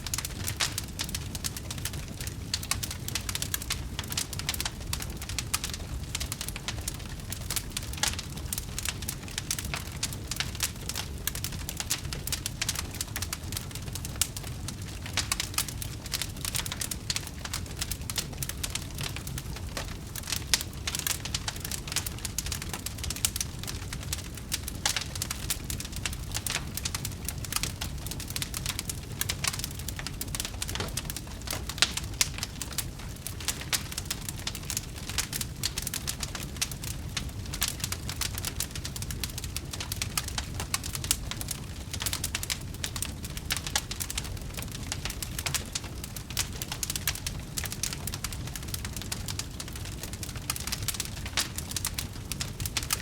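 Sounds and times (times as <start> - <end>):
low rumble of flames: 0.0 - 53.0
wood fire crackling: 0.0 - 53.0.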